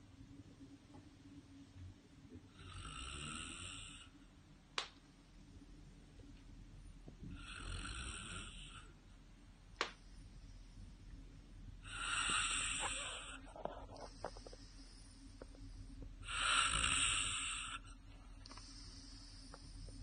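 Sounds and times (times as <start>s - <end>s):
person snoring: 2.6s - 4.1s, 7.4s - 8.9s, 11.8s - 13.5s, 16.2s - 17.9s.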